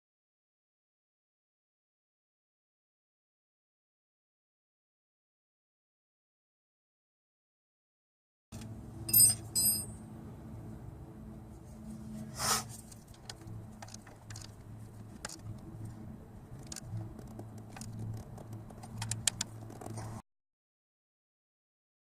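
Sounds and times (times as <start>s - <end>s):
metallic jingling: 9.1s - 10.0s
short hiss: 12.4s - 12.8s.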